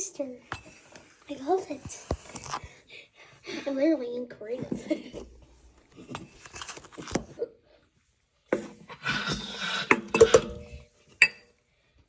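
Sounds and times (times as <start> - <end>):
handling clicks and knocks: 9.9 - 11.4.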